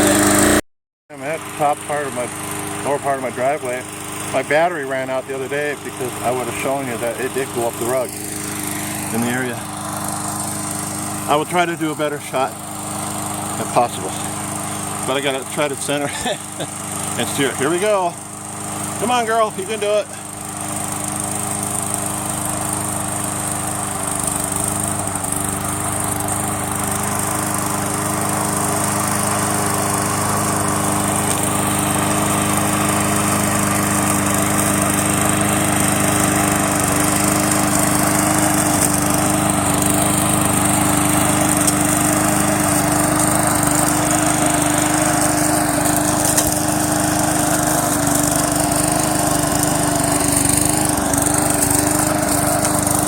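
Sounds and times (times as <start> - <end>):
small mower engine running: 0.0 - 53.0.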